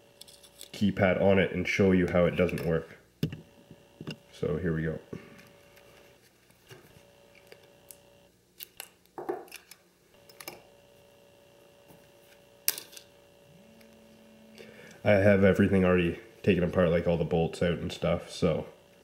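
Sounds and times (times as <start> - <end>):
faint steady hum: 0.0 - 19.0.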